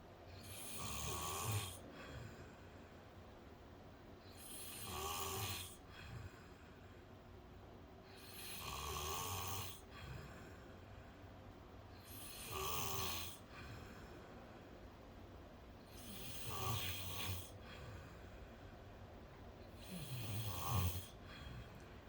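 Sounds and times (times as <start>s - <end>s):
quiet breathing: 0.0s - 22.0s
man snoring: 0.4s - 2.4s, 4.4s - 6.4s, 8.2s - 10.4s, 12.0s - 13.8s, 15.9s - 18.0s, 19.7s - 21.8s.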